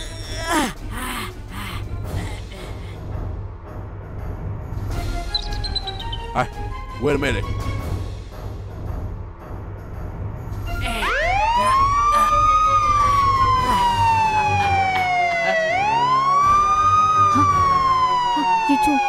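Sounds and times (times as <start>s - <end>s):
police siren wailing: 10.9s - 19.0s.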